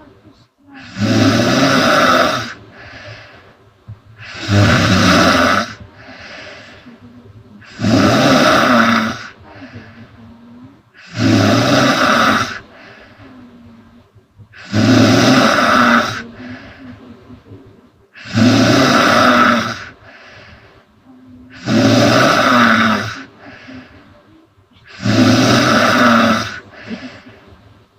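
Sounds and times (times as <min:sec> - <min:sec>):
quiet breathing: 0:00.0 - 0:27.9
woman snoring loudly: 0:00.8 - 0:03.2, 0:04.2 - 0:06.8, 0:07.6 - 0:09.9, 0:11.0 - 0:13.1, 0:14.6 - 0:16.8, 0:18.2 - 0:20.0, 0:21.5 - 0:23.8, 0:24.9 - 0:27.3.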